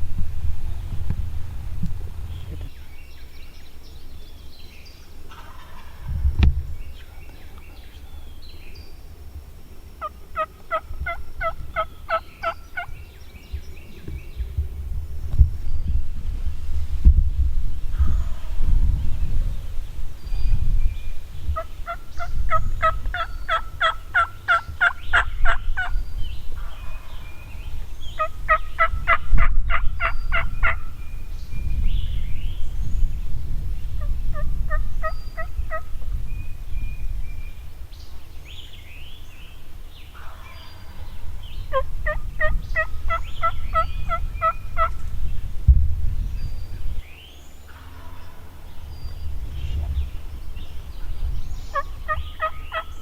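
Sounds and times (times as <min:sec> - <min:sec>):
low wind rumble: 0:00.0 - 0:53.0
faint songbird chirps: 0:02.3 - 0:17.0, 0:17.7 - 0:53.0
turkey yelping: 0:05.3 - 0:06.1, 0:10.0 - 0:12.9, 0:21.6 - 0:25.9, 0:28.2 - 0:30.8, 0:41.7 - 0:45.0, 0:51.7 - 0:52.9.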